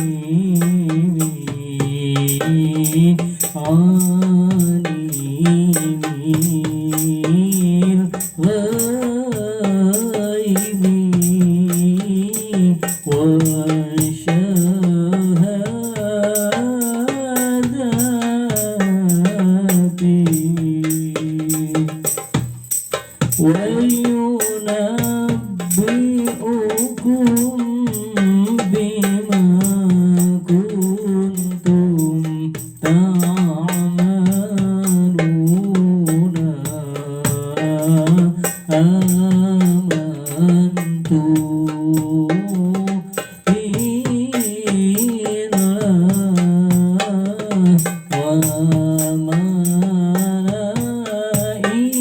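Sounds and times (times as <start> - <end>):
man singing ornamented lines: 0.0 - 22.4, 23.3 - 52.0
jingling hand percussion: 0.0 - 52.0.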